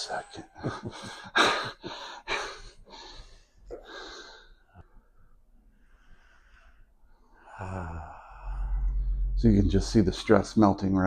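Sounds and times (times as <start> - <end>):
person breathing slowly: 5.6 - 9.4.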